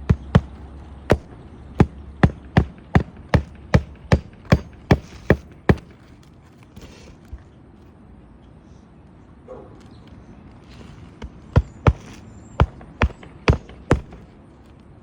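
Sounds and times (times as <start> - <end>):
hammer striking roofing nails: 0.0 - 6.2, 11.2 - 14.4.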